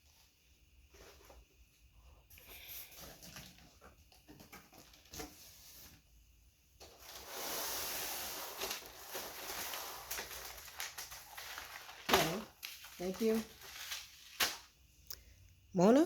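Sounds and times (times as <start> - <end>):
packaging rustling and crinkling: 2.8 - 6.0, 6.8 - 14.7.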